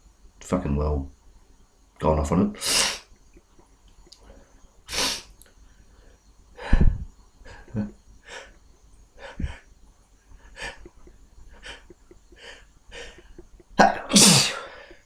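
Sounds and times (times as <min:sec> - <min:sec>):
man sniffing through blocked nose: 0:02.6 - 0:03.1, 0:04.9 - 0:05.3.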